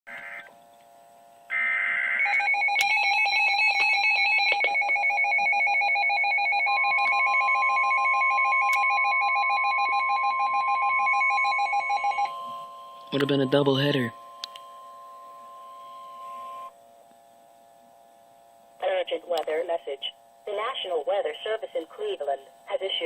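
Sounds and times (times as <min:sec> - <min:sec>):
rapid electronic alarm beeping: 0:01.5 - 0:16.7
steady high alarm tone: 0:01.5 - 0:16.8
screechy data tones: 0:06.7 - 0:16.7.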